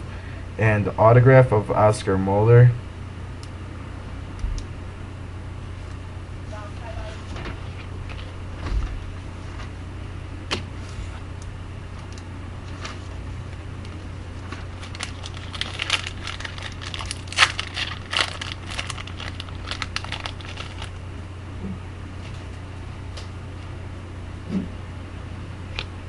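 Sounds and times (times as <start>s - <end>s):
steady low hum: 0.0s - 26.0s
foil wrapper crinkling and tearing: 14.4s - 21.0s.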